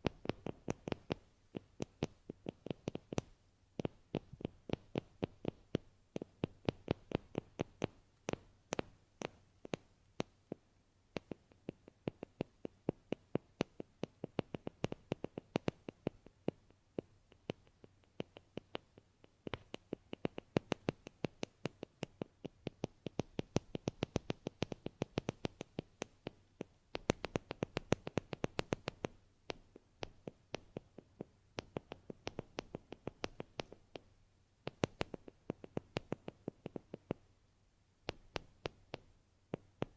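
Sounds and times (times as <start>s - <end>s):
rapid light tapping: 0.0s - 37.3s, 38.0s - 39.9s.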